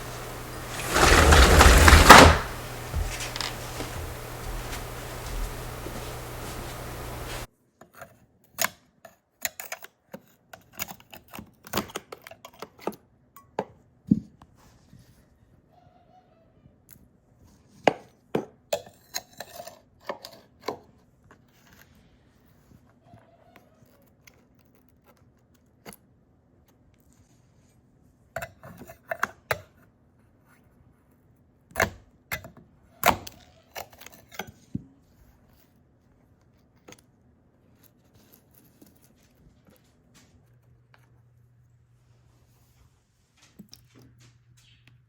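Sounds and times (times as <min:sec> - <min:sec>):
faint steady hum: 0:00.0 - 0:07.5.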